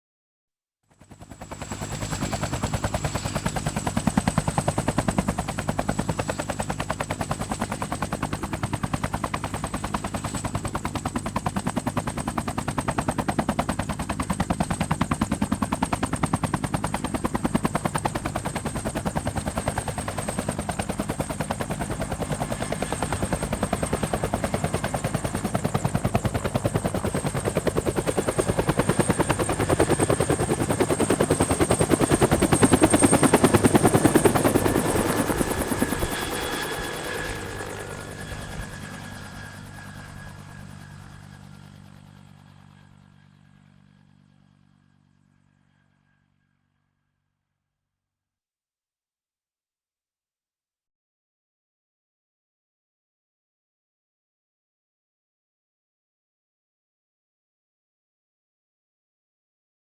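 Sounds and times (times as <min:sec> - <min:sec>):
helicopter rotor chop: 0:01.0 - 0:42.8.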